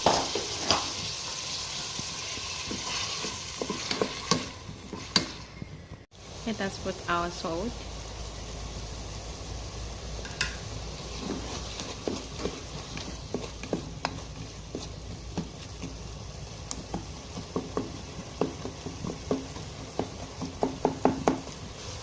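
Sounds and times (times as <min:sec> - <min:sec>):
vegetables sizzling in a pan: 0:00.0 - 0:22.0
spoon scraping a pan: 0:02.0 - 0:05.5, 0:10.3 - 0:16.1.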